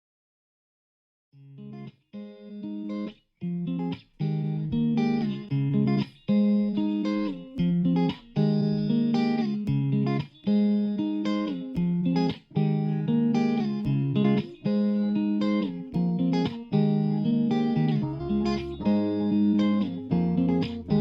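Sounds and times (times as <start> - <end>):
plucked-string tune: 11.8 - 21.0.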